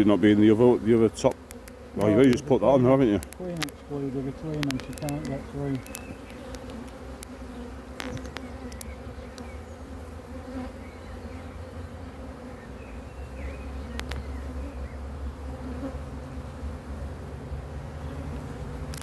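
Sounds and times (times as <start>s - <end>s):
honeybees buzzing: 0.0s - 19.0s
sharp clicks: 1.2s - 7.4s, 8.0s - 9.5s, 14.0s - 14.2s.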